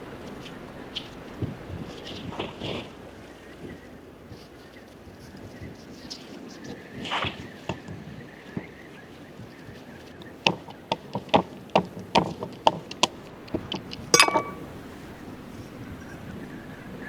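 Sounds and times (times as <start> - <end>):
sharp knocks: 10.5 - 14.7
clicks with short ringing tone: 14.2 - 14.6.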